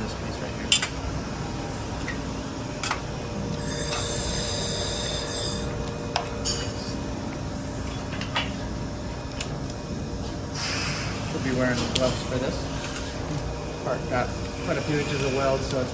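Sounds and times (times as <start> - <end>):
machine humming: 0.0 - 15.9
laser welder buzzing hiss: 1.0 - 15.9.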